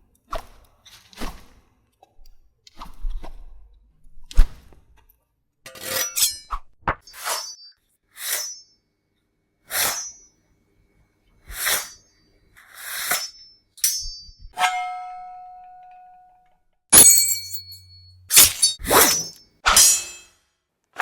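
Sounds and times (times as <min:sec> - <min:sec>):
machete drawn from sheath: 0:05.7 - 0:07.6, 0:08.2 - 0:08.6, 0:09.7 - 0:10.2, 0:11.5 - 0:12.0, 0:12.8 - 0:14.1, 0:18.3 - 0:20.3
sharp metal strike ringing: 0:16.9 - 0:20.4
blade swishes: 0:17.0 - 0:20.3.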